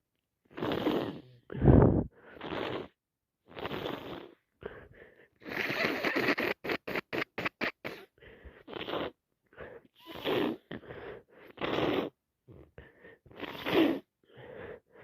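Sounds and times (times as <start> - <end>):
person blowing nose: 0.5 - 4.4, 5.4 - 9.2, 10.0 - 10.7, 11.5 - 12.1, 13.3 - 14.1
sniffs and snorts: 0.5 - 7.0, 7.8 - 14.6.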